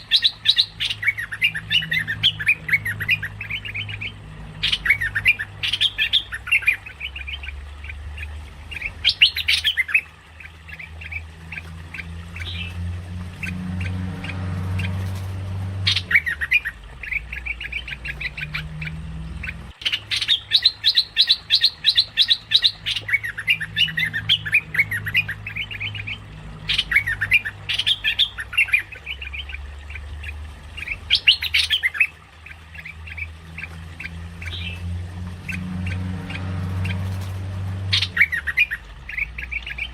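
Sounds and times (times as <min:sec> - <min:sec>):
bird squawky chattering calls: 0:00.0 - 0:12.7, 0:15.8 - 0:34.8
steady low hum: 0:00.0 - 0:39.9.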